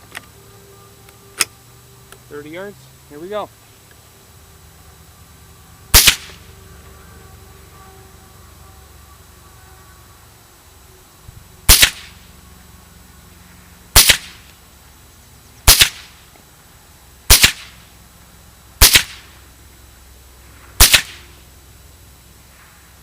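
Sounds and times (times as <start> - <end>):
rifle shots: 5.9 - 6.4, 11.7 - 12.2, 13.9 - 14.4, 15.6 - 16.1, 17.3 - 17.8, 18.8 - 19.3, 20.8 - 21.2.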